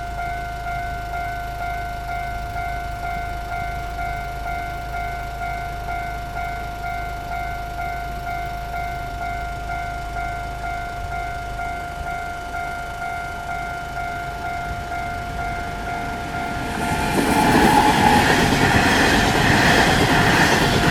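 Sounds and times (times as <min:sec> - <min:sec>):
level crossing warning bell: 0:00.0 - 0:20.9
steady low rumble: 0:08.5 - 0:20.9.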